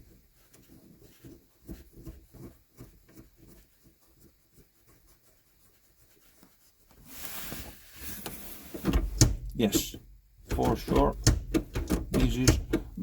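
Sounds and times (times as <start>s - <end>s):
gear lever knocking: 8.9s - 13.0s.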